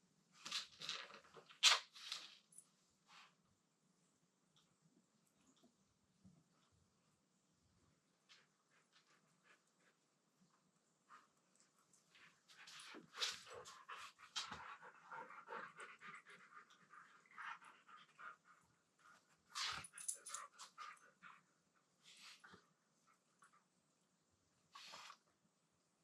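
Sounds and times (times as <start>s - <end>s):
dogs panting: 12.8s - 19.2s.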